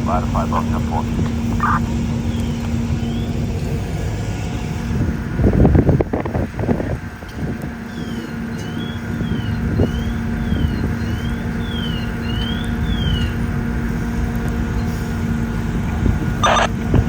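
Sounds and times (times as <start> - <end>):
faint siren wailing: 0.0 - 1.9, 16.4 - 16.7
fire engine rumbling: 0.0 - 17.0.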